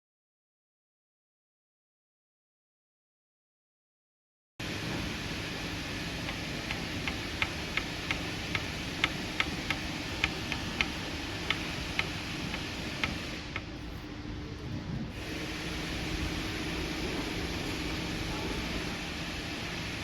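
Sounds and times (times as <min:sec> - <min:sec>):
engine ticking knock: 0:06.2 - 0:13.7.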